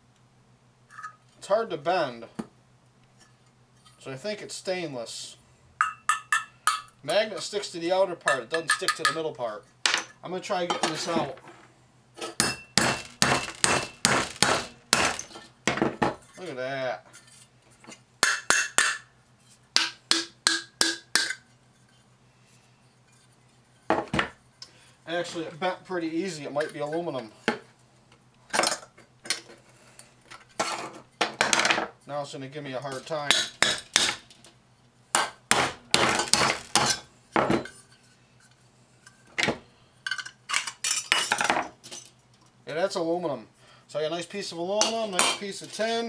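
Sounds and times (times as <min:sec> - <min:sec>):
hammer striking thin metal: 0:05.8 - 0:06.9, 0:12.2 - 0:15.4, 0:18.2 - 0:19.1, 0:19.8 - 0:21.4, 0:33.3 - 0:34.3.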